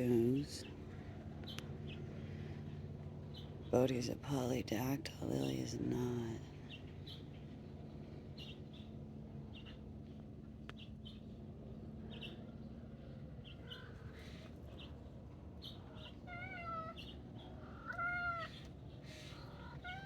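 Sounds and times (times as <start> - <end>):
cat meowing: 15.9 - 18.6, 19.4 - 20.0.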